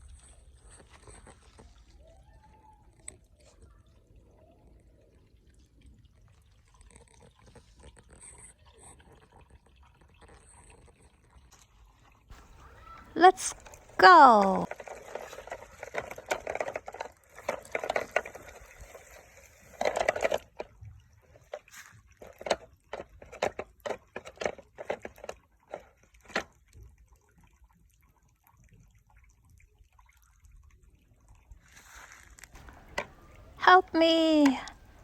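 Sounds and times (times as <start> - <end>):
water splashing and pouring: 3.3 - 33.8
water dripping: 32.4 - 35.0.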